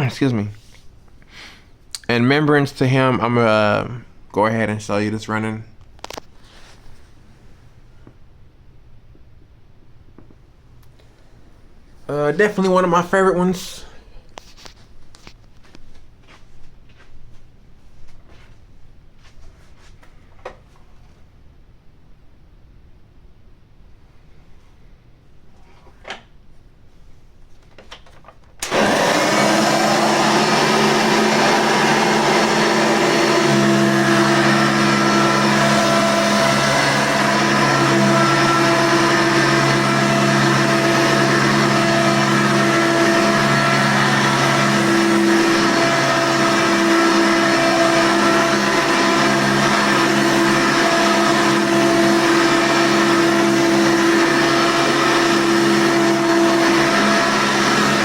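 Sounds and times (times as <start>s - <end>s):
vacuum cleaner motor humming: 28.6s - 58.0s.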